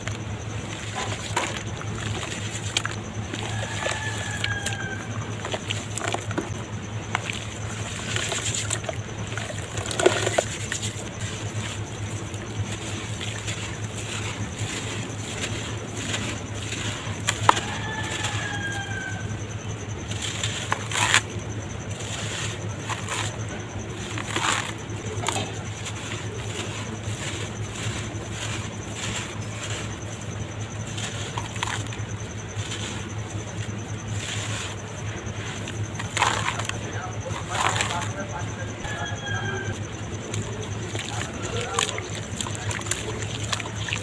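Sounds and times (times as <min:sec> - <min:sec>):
dirt crackling and snapping: 0:00.0 - 0:38.3
steady low hum: 0:00.0 - 0:44.0.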